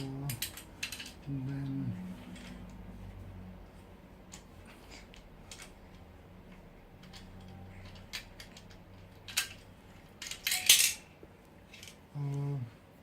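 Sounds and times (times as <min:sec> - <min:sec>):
folding table parts clicking: 0:00.0 - 0:01.3, 0:07.0 - 0:11.1.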